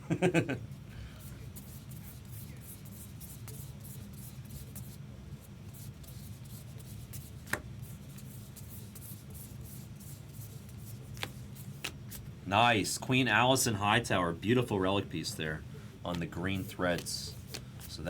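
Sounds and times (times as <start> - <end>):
steady low hum: 0.0 - 18.0
cards rubbing papery: 1.2 - 12.3, 16.1 - 18.0.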